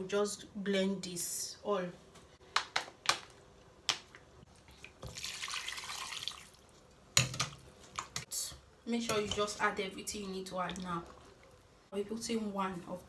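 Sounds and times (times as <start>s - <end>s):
water running: 4.5s - 6.8s.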